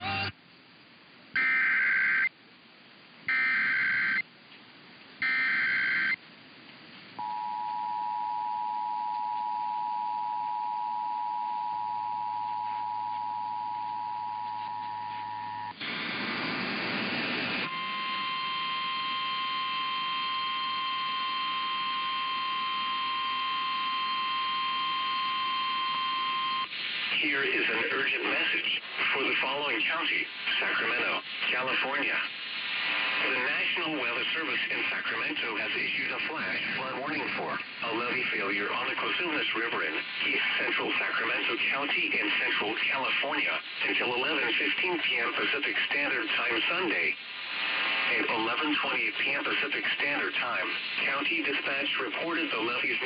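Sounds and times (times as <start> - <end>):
noisy static burst: 14.5 - 21.6, 25.0 - 53.0
two-tone attention signal: 17.7 - 26.7.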